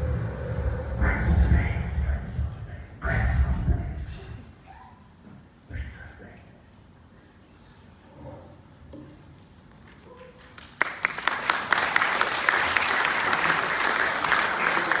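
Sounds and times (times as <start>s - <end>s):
audience applause: 10.6s - 15.0s.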